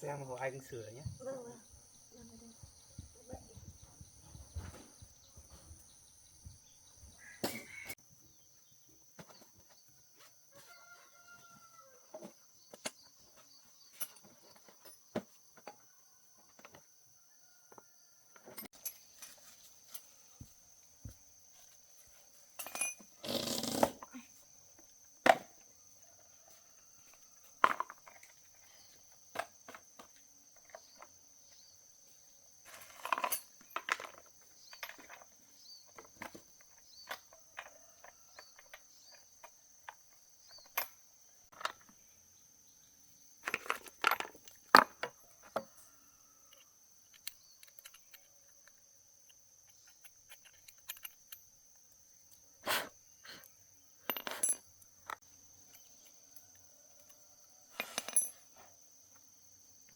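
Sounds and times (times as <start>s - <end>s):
clicks and clinks of small parts: 22.6s - 23.2s, 32.7s - 35.3s, 43.4s - 45.6s, 46.5s - 52.5s, 53.4s - 58.4s.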